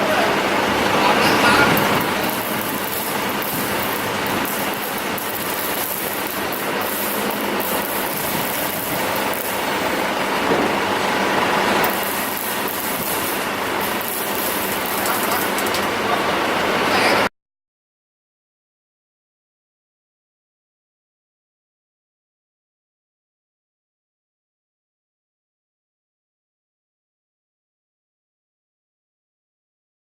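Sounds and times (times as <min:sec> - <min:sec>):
diesel generator running: 0:00.0 - 0:17.3.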